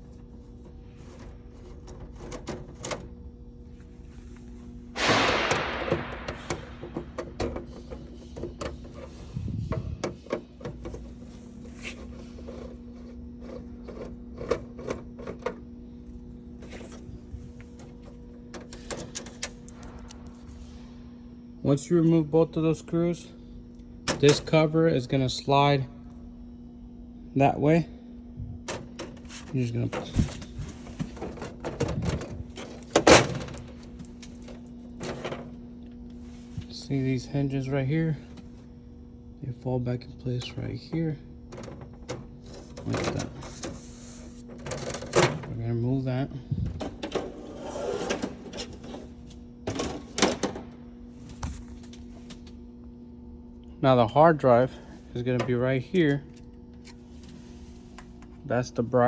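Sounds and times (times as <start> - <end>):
steady low hum: 0.0 - 59.0
panel clicks and rattling knocks: 0.6 - 3.1, 5.0 - 11.2, 11.9 - 15.6, 28.6 - 35.6, 40.3 - 43.8, 48.1 - 50.8.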